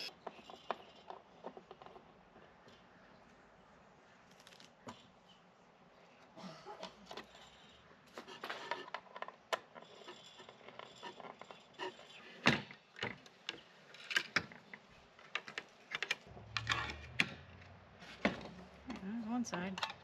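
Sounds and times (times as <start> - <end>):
metal hardware clicking and clinking: 15.4 - 17.7.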